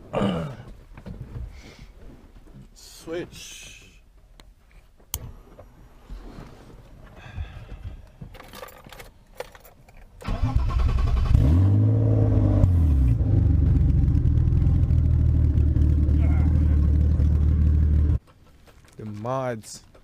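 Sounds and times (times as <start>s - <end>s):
car engine starting and idling: 10.2s - 18.2s.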